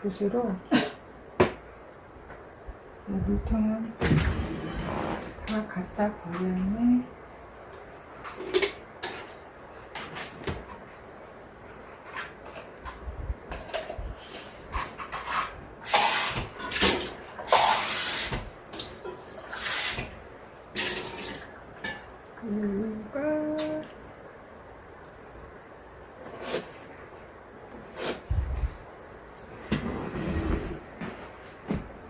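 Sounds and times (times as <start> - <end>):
water running into container: 15.8 - 18.4, 20.8 - 21.5.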